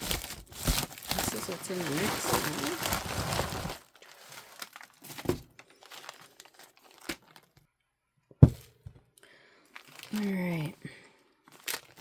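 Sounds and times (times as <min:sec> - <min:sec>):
packaging crinkling: 0:00.0 - 0:07.6, 0:09.6 - 0:10.7, 0:11.4 - 0:12.0.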